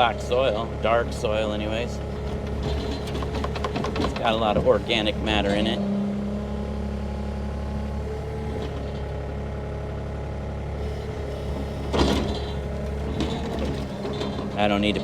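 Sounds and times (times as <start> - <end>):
excavator diesel engine running: 0.0 - 15.0
scrape or clunk: 11.5 - 14.6.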